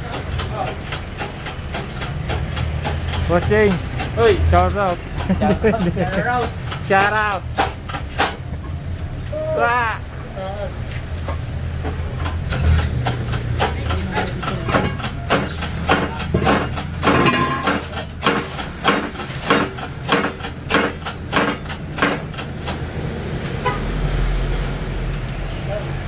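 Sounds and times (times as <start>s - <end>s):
hammer ringing on metal: 2.8s - 8.8s, 12.3s - 22.3s.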